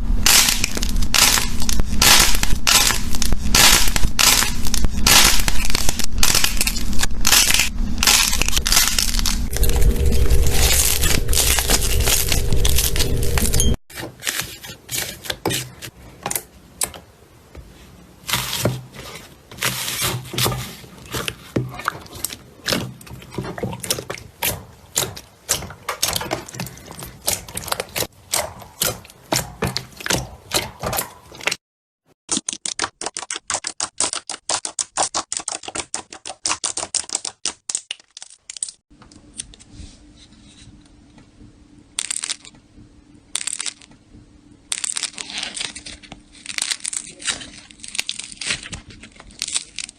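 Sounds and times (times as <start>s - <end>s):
low steady hum: 0.0s - 13.8s
slime crackling and popping: 0.2s - 13.8s, 42.0s - 42.5s, 43.4s - 43.9s, 44.7s - 49.9s.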